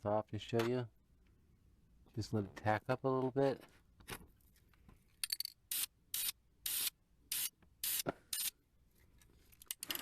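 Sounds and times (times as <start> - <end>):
spray paint can hissing: 5.7 - 8.5.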